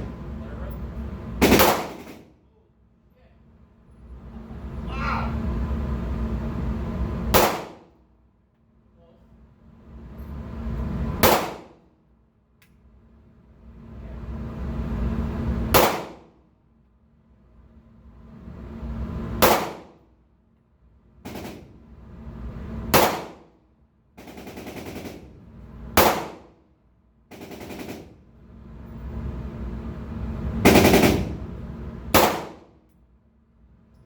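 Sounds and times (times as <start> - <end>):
pistol shots: 1.4 - 2.3, 7.3 - 7.9, 11.2 - 11.8, 15.8 - 16.3, 19.4 - 20.0, 22.9 - 23.5, 26.0 - 26.6, 32.1 - 32.8.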